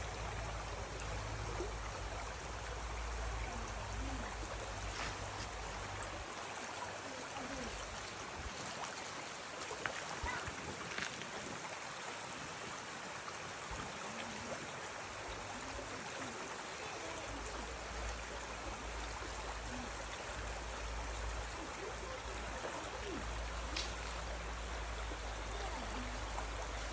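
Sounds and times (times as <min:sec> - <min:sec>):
stream water rushing: 0:00.0 - 0:26.9
faint ticks: 0:23.6 - 0:24.3.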